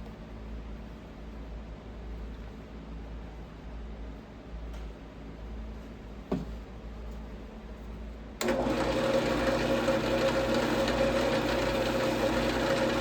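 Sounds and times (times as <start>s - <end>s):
wood lathe humming: 8.4s - 13.0s.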